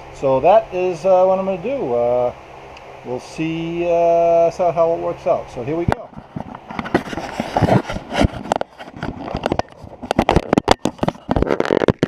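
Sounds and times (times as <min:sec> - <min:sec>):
camera handling clicks and rubbing: 0:06.2 - 0:12.0.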